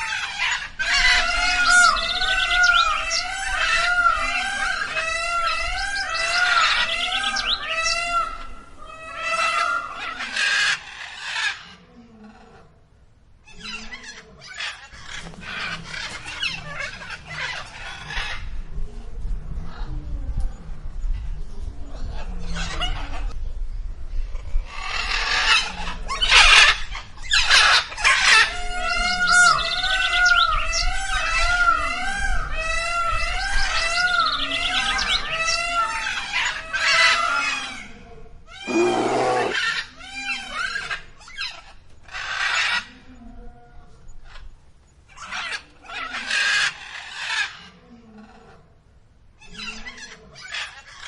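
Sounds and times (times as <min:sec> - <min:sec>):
harsh raspy bird calls: 0:38.5 - 0:42.9
harsh screechy animal calls: 0:38.6 - 0:39.9
chorus of arching chirps: 0:38.6 - 0:42.6.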